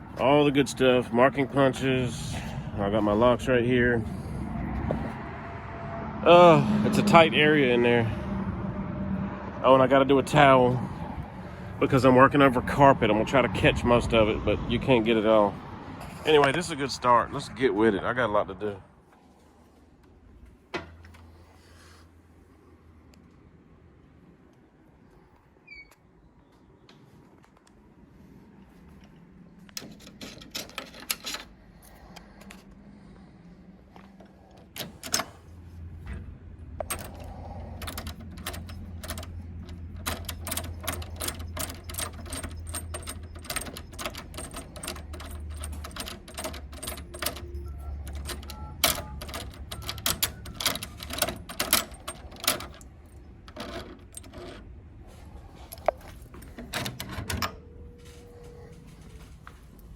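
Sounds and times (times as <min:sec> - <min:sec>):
lock hardware clicking: 0:29.7 - 0:32.8, 0:34.5 - 0:35.5, 0:36.8 - 0:54.7, 0:55.7 - 0:57.6.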